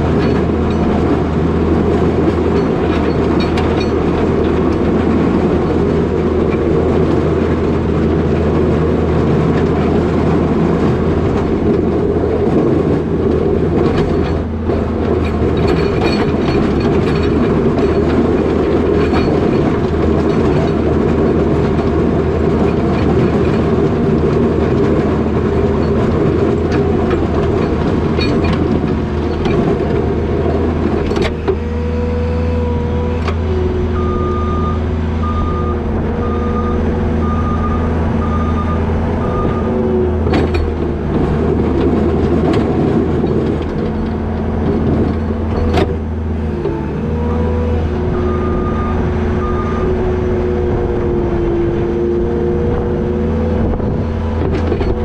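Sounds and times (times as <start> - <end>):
machine rattling and clatter: 0.0 - 31.6, 39.3 - 46.3
diesel engine running under load: 0.0 - 55.0.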